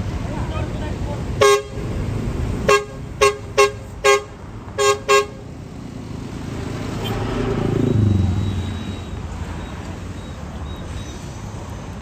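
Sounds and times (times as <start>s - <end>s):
bus engine rumble: 0.0s - 12.0s
bus horn tooting: 0.6s - 5.5s, 7.0s - 7.4s.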